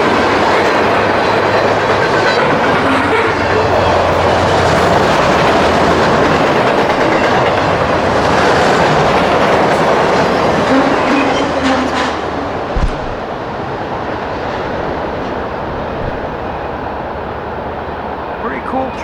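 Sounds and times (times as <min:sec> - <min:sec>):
train wheels clacking on rails: 0:00.0 - 0:19.0
short thump: 0:12.7 - 0:13.4.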